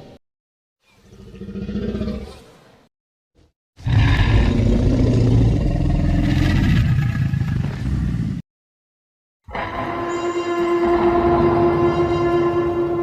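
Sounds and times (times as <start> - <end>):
deep rough dinosaur roar: 3.8 - 7.6
steady tones: 9.5 - 13.0.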